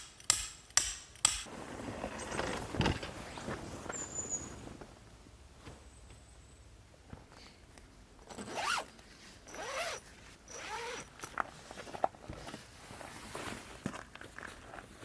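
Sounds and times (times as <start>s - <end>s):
zipper being pulled: 8.3s - 8.9s, 9.5s - 11.3s.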